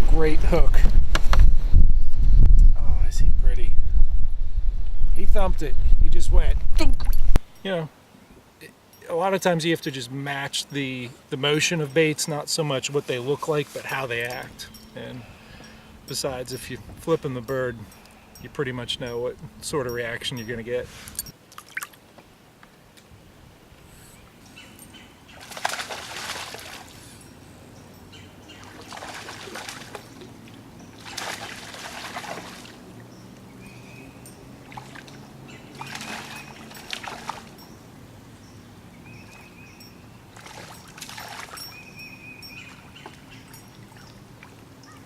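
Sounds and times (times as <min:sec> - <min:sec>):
water splashing and sloshing: 0:21.0 - 0:22.3, 0:25.3 - 0:27.3, 0:28.5 - 0:37.7, 0:40.3 - 0:45.0
high bird chirps: 0:41.6 - 0:44.2.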